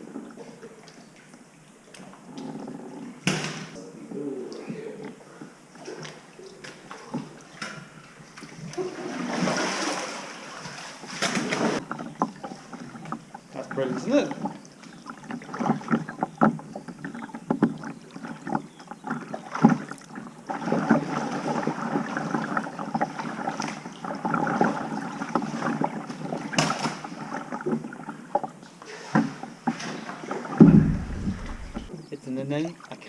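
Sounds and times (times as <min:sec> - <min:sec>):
water splashing around kayak: 0:05.6 - 0:31.9
knocks and clicks: 0:30.6 - 0:31.9.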